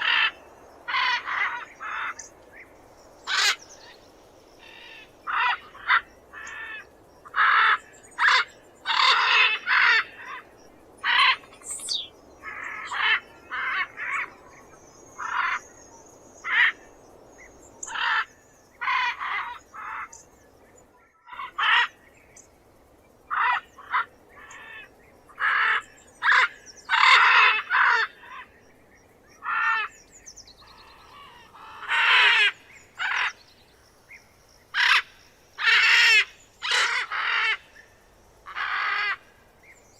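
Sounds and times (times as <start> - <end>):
macaw squawking: 3.3 - 3.6, 34.8 - 37.6.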